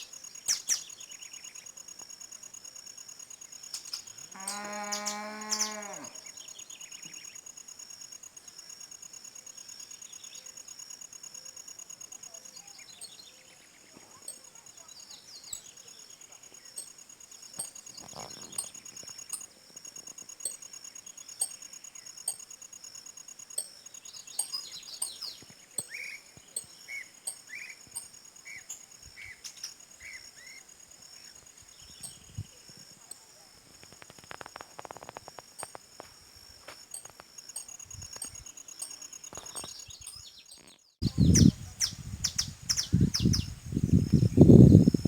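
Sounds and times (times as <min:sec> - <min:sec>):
birds chirping and calling: 0:00.0 - 0:01.2, 0:24.2 - 0:30.2, 0:37.6 - 0:45.0
insects trilling: 0:00.0 - 0:45.0.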